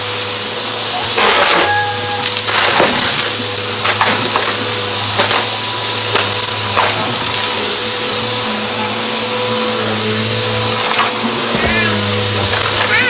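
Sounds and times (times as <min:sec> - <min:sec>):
debris crackling in vacuum: 0:00.0 - 0:13.0
vacuum cleaner running: 0:00.0 - 0:13.0.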